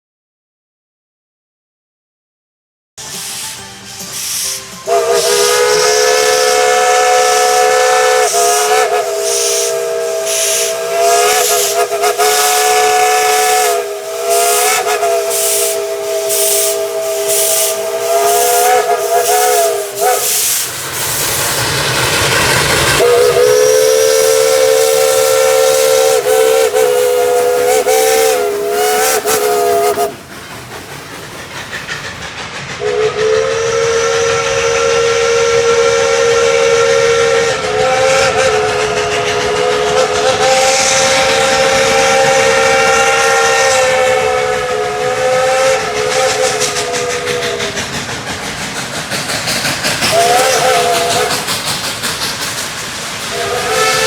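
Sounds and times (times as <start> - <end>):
steam whistle blasts: 3.0 - 20.7, 23.0 - 30.2, 32.8 - 48.3, 50.0 - 51.6, 53.3 - 54.0
loud steam hiss: 3.0 - 54.0.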